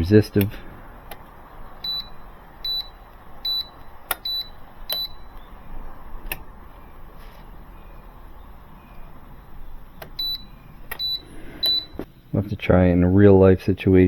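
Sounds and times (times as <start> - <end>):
sharp clicks: 0.4 - 1.4, 2.8 - 5.5, 6.2 - 6.5, 9.8 - 11.8
short high electronic beeps: 10.2 - 12.0.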